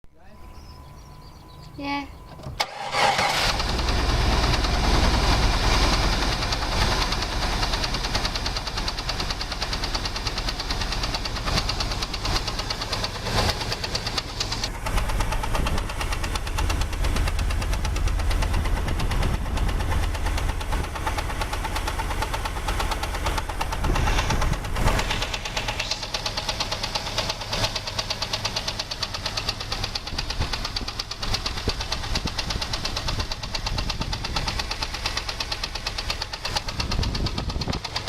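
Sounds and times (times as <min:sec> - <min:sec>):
car engine idling with knock: 0:03.4 - 0:38.0
wind buffeting microphone: 0:14.9 - 0:21.2, 0:23.2 - 0:25.9, 0:30.0 - 0:34.7, 0:36.6 - 0:38.0.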